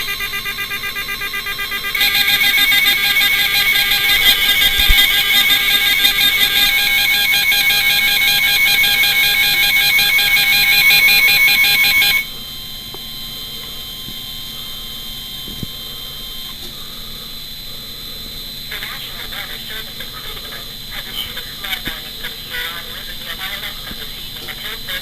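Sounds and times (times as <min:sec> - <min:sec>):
weather radio alarm tone: 0:00.0 - 0:16.6.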